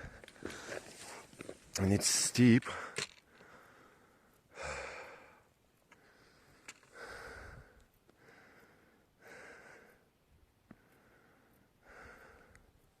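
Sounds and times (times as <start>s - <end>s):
person breathing hard: 0.0s - 1.3s, 2.7s - 10.1s, 10.8s - 12.8s.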